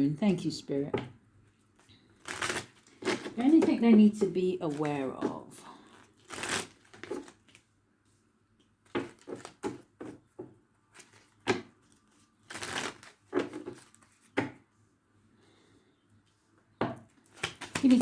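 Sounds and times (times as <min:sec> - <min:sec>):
cards being shuffled: 0:02.2 - 0:03.9, 0:04.7 - 0:05.3, 0:05.9 - 0:07.6, 0:11.0 - 0:14.4, 0:17.2 - 0:18.0.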